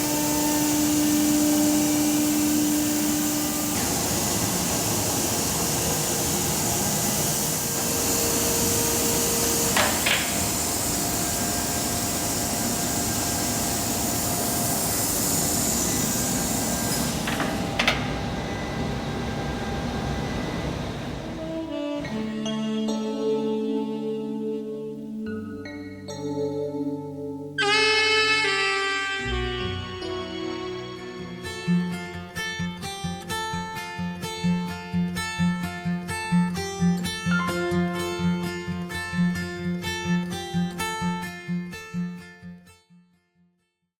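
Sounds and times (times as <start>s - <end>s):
cnc router machining wood: 0.0s - 22.3s.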